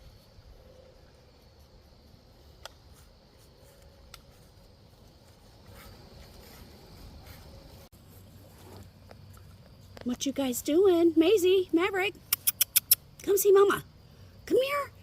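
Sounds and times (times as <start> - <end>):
sharp clicks: 12.2 - 13.3.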